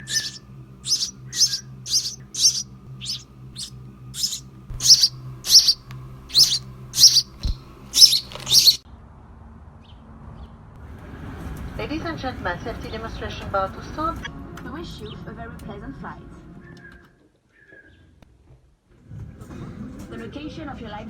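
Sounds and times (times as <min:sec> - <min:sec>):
bird chirping: 0:00.0 - 0:08.8
faint low hum: 0:00.0 - 0:08.8.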